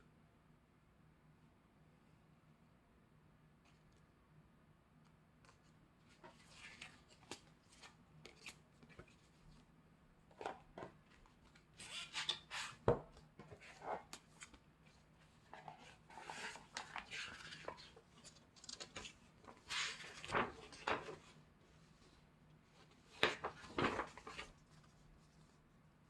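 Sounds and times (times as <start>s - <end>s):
paper and card rustling: 13.4s - 21.4s, 22.8s - 25.6s.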